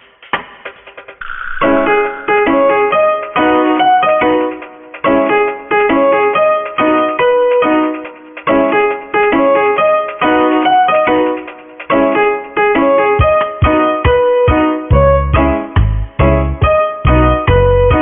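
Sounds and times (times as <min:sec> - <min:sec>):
piano music: 0:01.2 - 0:18.0.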